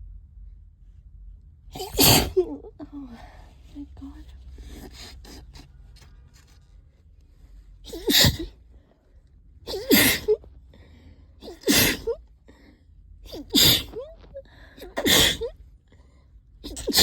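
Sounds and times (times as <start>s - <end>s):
person sneezing: 1.8s - 2.7s, 7.9s - 8.5s, 9.7s - 10.4s, 11.4s - 12.2s, 13.3s - 15.6s, 16.6s - 17.0s.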